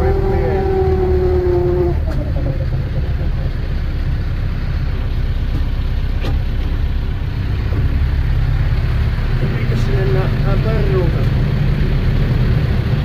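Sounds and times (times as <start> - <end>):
machine engine rumbling: 0.0 - 13.0.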